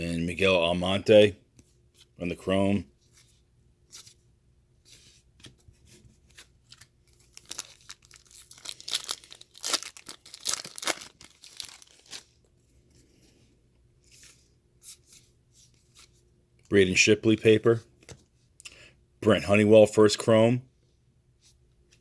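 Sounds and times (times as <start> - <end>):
cards rustling: 4.9 - 12.5
plastic wrapper tearing and crinkling: 6.7 - 12.4.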